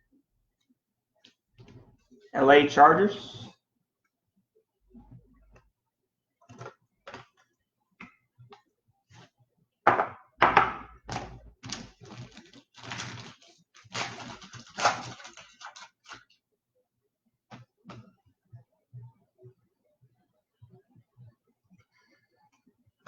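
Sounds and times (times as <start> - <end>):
trading cards handled on a table: 6.4 - 8.1.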